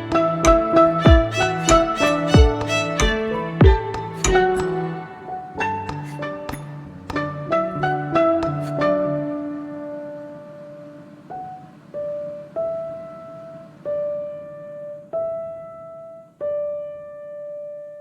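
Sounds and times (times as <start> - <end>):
slow piano melody: 0.0 - 18.0.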